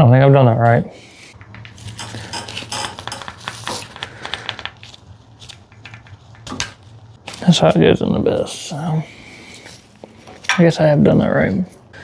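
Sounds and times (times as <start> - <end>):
metallic clicks and scrapes: 1.3 - 3.8.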